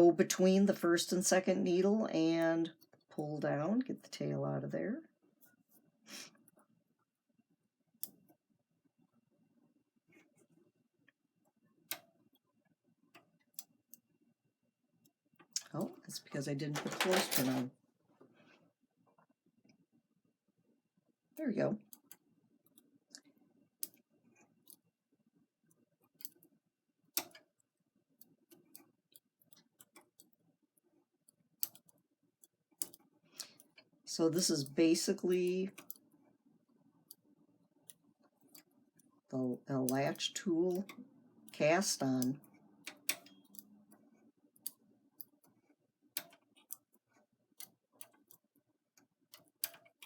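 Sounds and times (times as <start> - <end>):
knitting machine needles clicking: 15.4 - 17.7, 27.1 - 36.3, 37.0 - 50.0.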